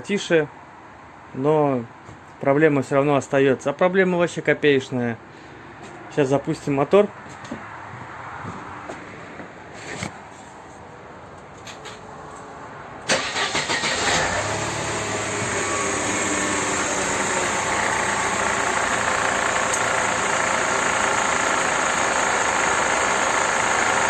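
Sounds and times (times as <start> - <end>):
car engine idling: 13.1 - 24.0
starter motor cranking: 13.1 - 24.0.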